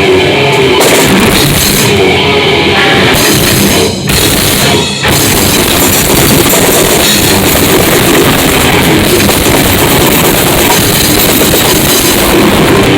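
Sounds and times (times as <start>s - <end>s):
rock band playing: 0.0s - 12.9s
drum kit pounding: 0.8s - 2.1s, 3.1s - 12.9s.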